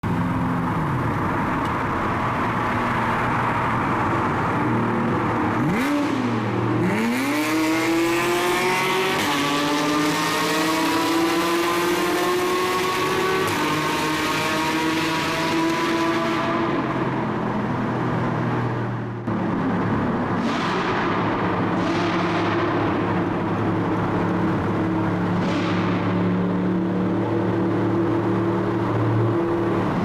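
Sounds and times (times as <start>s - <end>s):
sports car engine revving: 5.3s - 18.7s.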